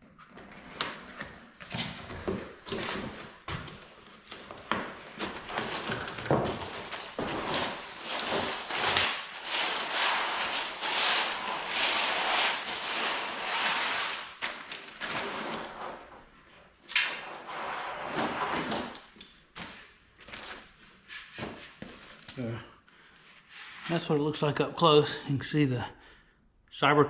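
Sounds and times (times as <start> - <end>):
packaging rustling and scraping: 0.2 - 16.3, 17.4 - 22.4.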